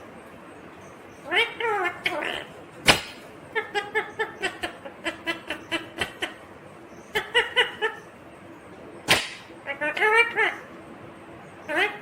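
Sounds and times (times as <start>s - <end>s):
parrot chattering: 1.2s - 6.5s, 7.1s - 8.2s, 9.1s - 10.7s, 11.7s - 12.0s.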